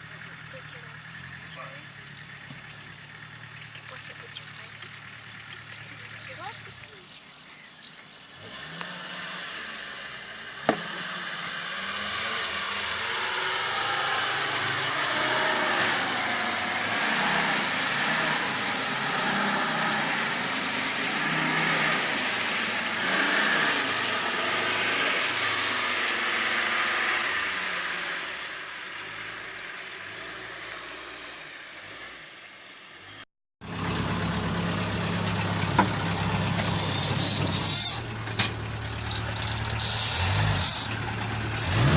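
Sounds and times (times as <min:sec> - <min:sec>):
diesel engine running: 0:00.0 - 0:41.9.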